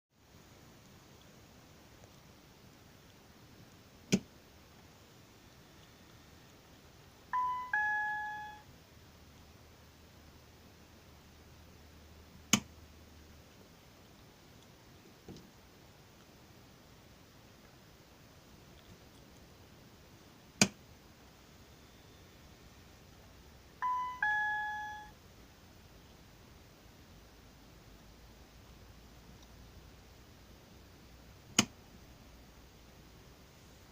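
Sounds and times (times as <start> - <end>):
two-note electronic chime: 7.4 - 8.7, 23.8 - 25.1.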